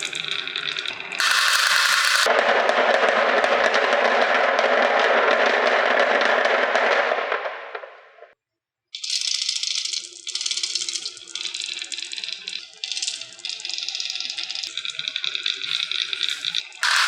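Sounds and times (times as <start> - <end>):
marbles clattering down wooden run: 0.0 - 7.9, 9.0 - 17.0.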